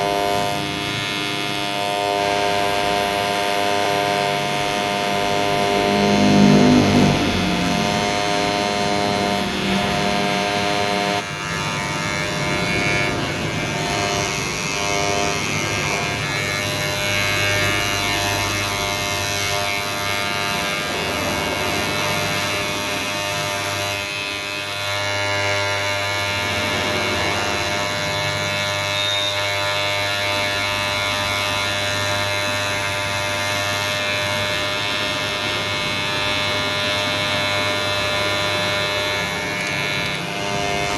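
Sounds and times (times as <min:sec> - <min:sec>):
electric hair clipper buzzing: 0:00.0 - 0:40.9.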